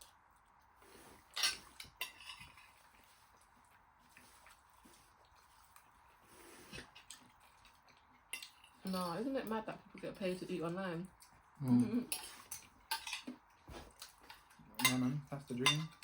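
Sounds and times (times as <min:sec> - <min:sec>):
cutlery clinking on plates: 0:01.3 - 0:02.8, 0:12.1 - 0:16.0.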